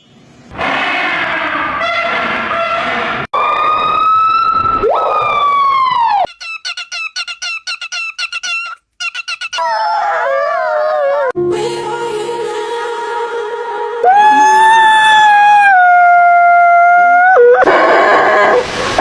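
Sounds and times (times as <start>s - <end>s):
high siren-like animal call: 0.5s - 6.3s, 14.0s - 19.0s
warbling animal call: 0.5s - 11.4s, 14.0s - 19.0s.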